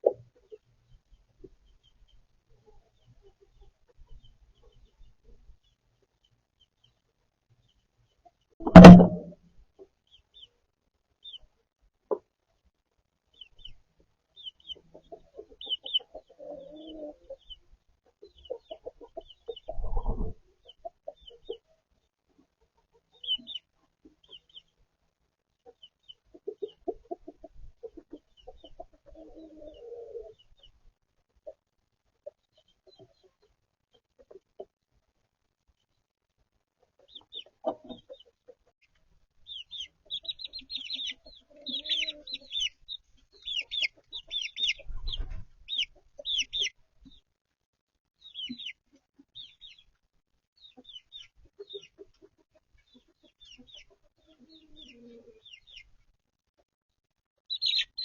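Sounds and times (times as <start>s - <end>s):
chickens clucking: 0.0s - 35.2s, 36.7s - 47.3s, 48.2s - 50.0s, 50.6s - 56.1s, 57.4s - 58.0s
sharp thump: 8.6s - 9.4s
short knock: 8.6s - 9.4s.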